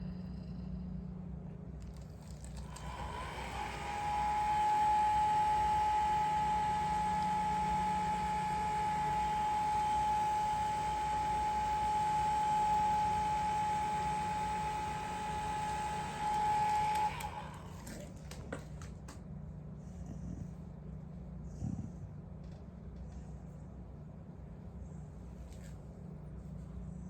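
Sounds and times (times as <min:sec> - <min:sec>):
hair dryer blowing: 0:02.4 - 0:18.0.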